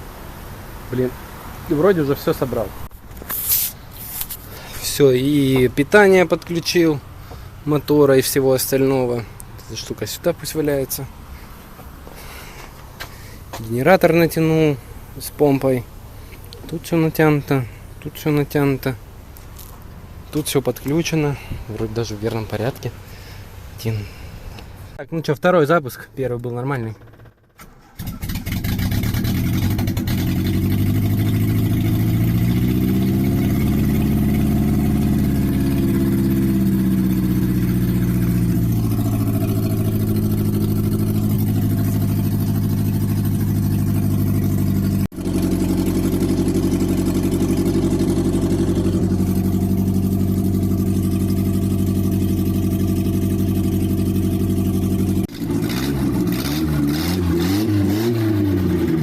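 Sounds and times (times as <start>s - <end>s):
car engine starting and revving: 27.0s - 59.0s.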